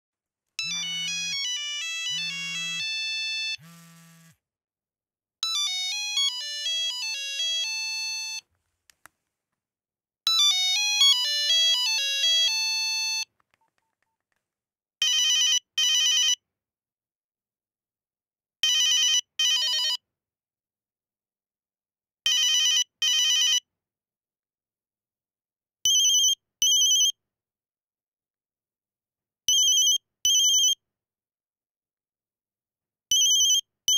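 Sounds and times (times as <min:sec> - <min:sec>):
synthesized ringtone melody: 0:00.6 - 0:03.6, 0:05.4 - 0:08.4, 0:10.3 - 0:13.3
cell phone ringtone melody: 0:00.6 - 0:03.9, 0:05.4 - 0:08.4, 0:10.3 - 0:13.3, 0:15.0 - 0:16.4, 0:18.6 - 0:20.0, 0:22.3 - 0:23.7, 0:25.9 - 0:27.1, 0:29.5 - 0:30.8, 0:33.1 - 0:33.7.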